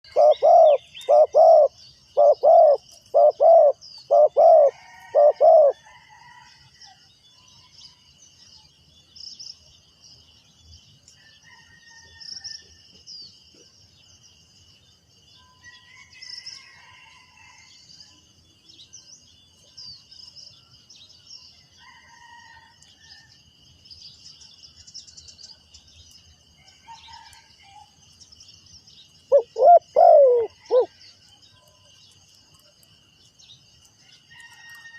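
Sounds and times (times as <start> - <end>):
dove cooing: 0.0 - 5.8, 29.3 - 31.0.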